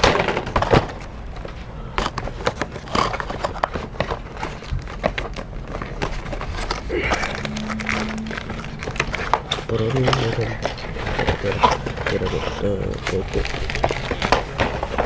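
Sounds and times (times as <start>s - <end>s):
cardboard box crinkling and scraping: 9.7s - 15.0s.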